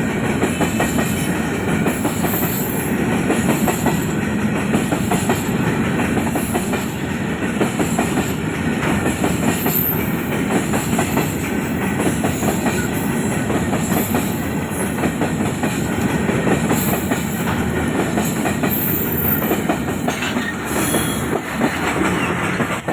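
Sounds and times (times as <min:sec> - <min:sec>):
train wheels clattering on rails: 0:00.0 - 0:22.9
high-pitched wheel squeals: 0:20.2 - 0:21.3.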